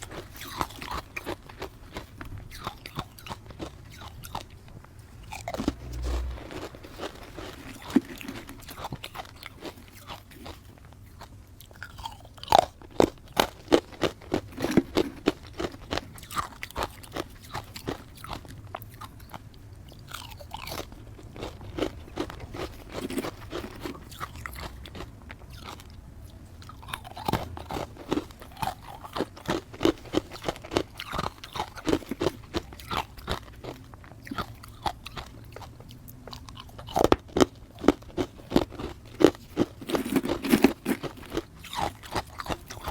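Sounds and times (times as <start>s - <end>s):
person crunching ice: 36.6s - 42.9s.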